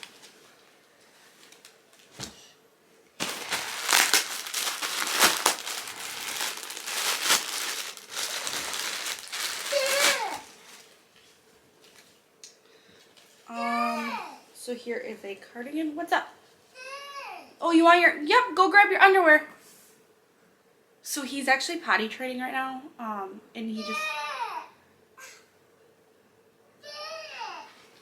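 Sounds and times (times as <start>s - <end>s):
plastic bag crinkling: 0.0s - 0.8s, 1.4s - 2.1s, 3.2s - 11.1s.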